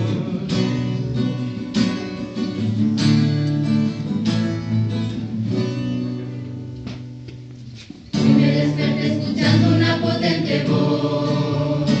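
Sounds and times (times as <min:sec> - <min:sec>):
acoustic guitar strumming: 0:00.0 - 0:12.0.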